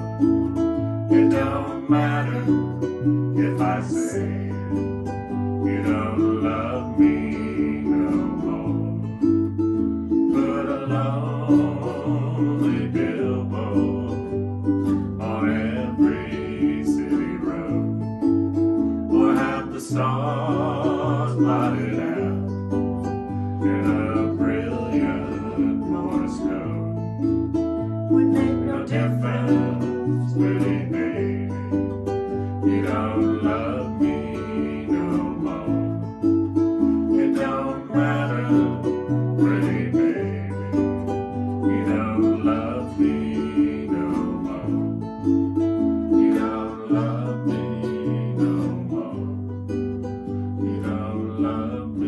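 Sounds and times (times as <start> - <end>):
held bass notes: 0.0 - 52.0
plucked strings: 0.0 - 52.0.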